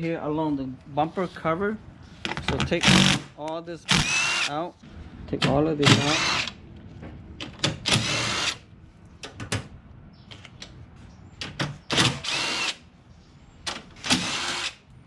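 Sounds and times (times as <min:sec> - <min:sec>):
electric drill running in bursts: 0:03.9 - 0:04.5, 0:12.2 - 0:12.8, 0:14.1 - 0:14.8.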